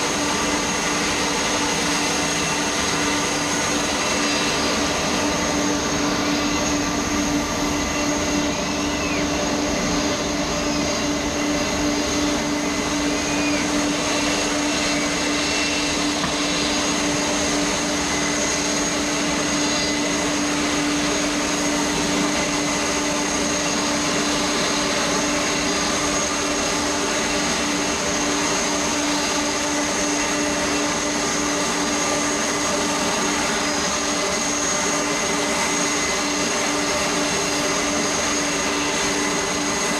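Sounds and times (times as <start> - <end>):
jet airliner engines running: 0.0 - 39.9.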